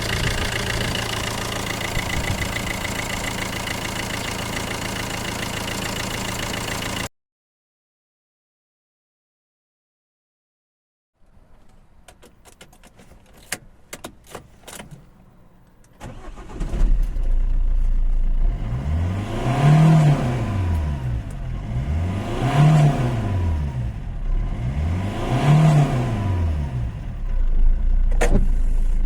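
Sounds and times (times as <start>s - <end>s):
car engine starting and idling: 0.0s - 7.1s, 15.1s - 29.0s.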